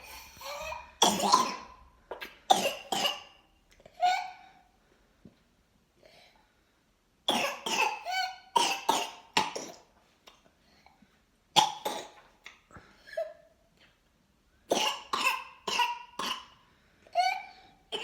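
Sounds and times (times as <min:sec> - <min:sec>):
child coughing fit: 0:00.0 - 0:03.4, 0:07.3 - 0:09.9, 0:14.7 - 0:16.6, 0:17.2 - 0:18.0.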